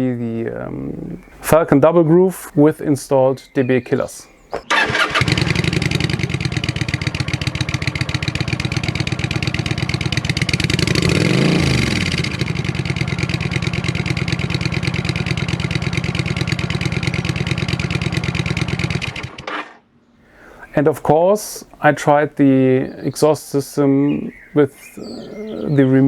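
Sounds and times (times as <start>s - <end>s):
motorcycle engine revving: 4.6s - 19.8s
motorcycle engine idling: 4.7s - 19.4s.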